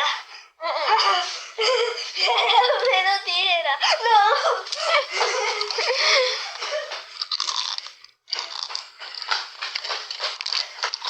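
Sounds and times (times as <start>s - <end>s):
potato chips crunching: 7.0s - 11.0s.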